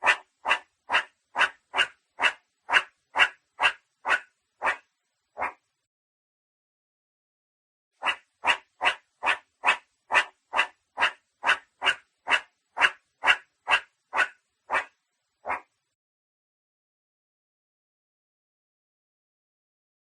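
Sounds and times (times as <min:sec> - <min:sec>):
animal short calls: 0:00.0 - 0:04.8, 0:08.0 - 0:15.7.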